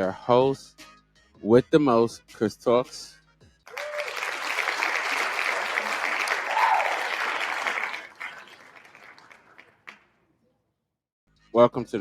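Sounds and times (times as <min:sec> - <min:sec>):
crowd clapping: 0:03.7 - 0:10.1.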